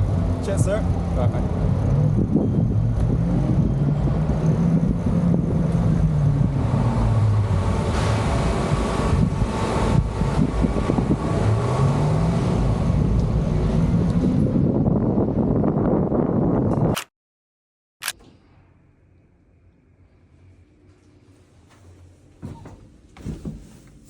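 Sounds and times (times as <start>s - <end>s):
low hum rising and falling: 0.0s - 16.9s
vehicle engine and road rumble: 0.0s - 17.1s.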